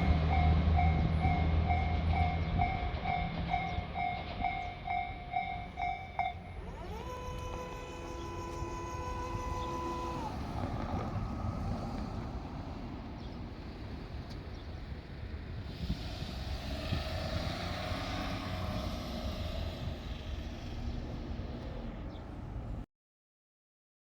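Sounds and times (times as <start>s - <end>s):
wind noise on microphone: 13.7s - 20.4s.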